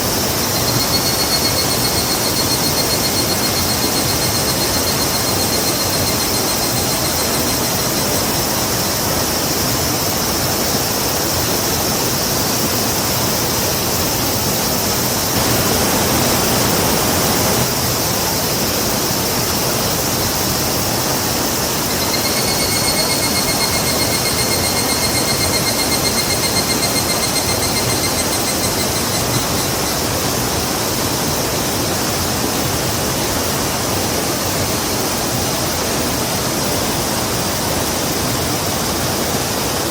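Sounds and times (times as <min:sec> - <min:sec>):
high steady whining tone: 0:00.0 - 0:09.0, 0:21.1 - 0:30.6
river rushing: 0:13.0 - 0:39.9.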